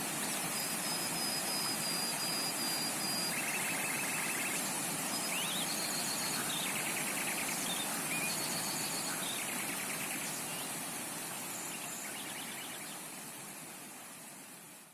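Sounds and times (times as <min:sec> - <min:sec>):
creek flowing: 0:00.0 - 0:14.9
birds trilling and whistling: 0:01.7 - 0:10.8.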